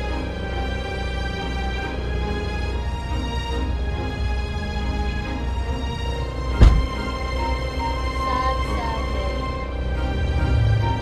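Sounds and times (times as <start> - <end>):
deep drum hit: 6.6 - 7.0.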